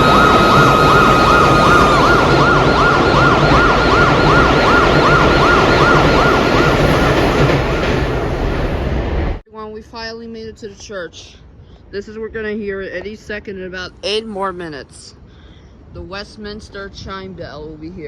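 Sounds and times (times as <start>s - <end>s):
siren yelp wailing: 0.0s - 8.3s
steady high tone: 0.0s - 8.8s
street traffic rumble: 0.0s - 9.4s.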